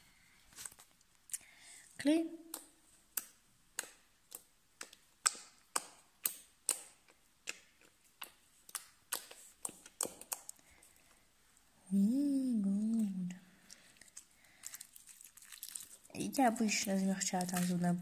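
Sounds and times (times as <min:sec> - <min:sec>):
slime being stirred clicking: 0:02.5 - 0:10.6
person humming: 0:11.9 - 0:13.4.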